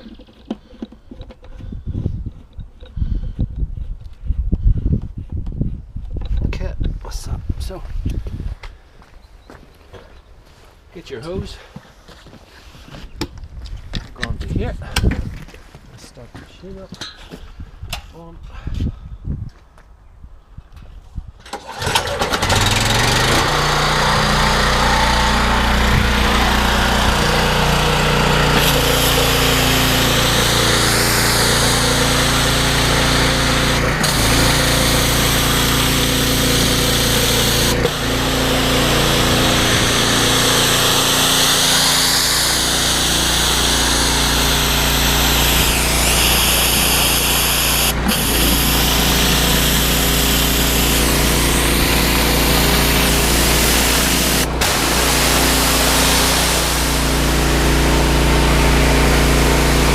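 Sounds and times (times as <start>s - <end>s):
petrol engine running: 21.5s - 59.9s.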